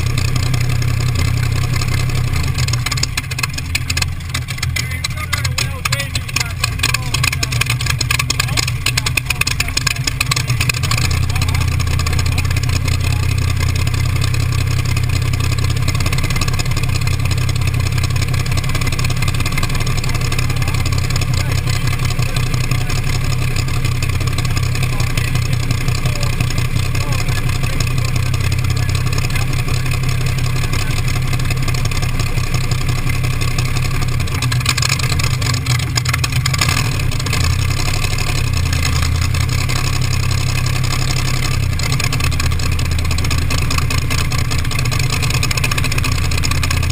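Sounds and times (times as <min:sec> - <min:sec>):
car engine running steadily: 0:00.0 - 0:46.9.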